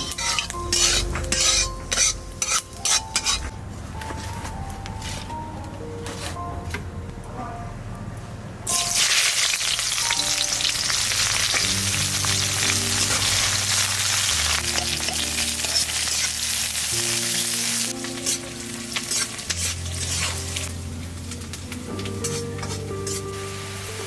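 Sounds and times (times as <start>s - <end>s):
food sizzling in hot oil: 0.0s - 3.4s, 8.7s - 24.0s
background music: 0.0s - 24.0s.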